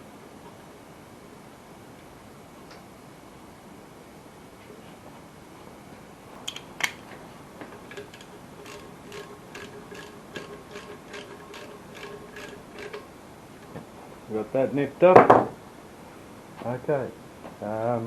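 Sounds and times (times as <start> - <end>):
socket ratchet clicking: 6.4 - 7.0, 7.9 - 13.1.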